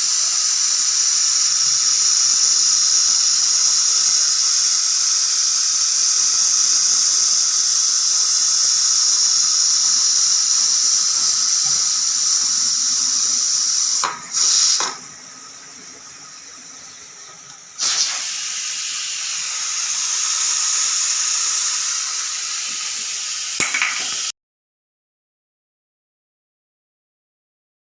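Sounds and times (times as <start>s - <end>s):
pressure cooker whistle hissing: 0.0s - 15.3s, 17.8s - 24.3s.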